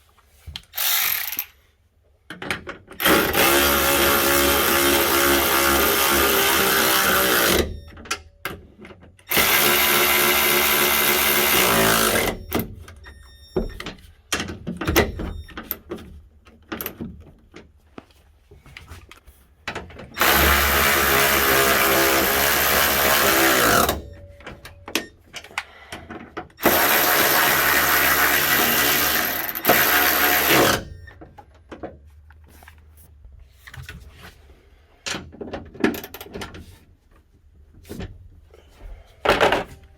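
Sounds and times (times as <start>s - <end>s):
parts clicking and knocking: 0.5s - 1.6s, 2.2s - 32.9s, 35.0s - 36.6s
cordless power driver whirring: 20.2s - 24.1s, 26.6s - 30.9s.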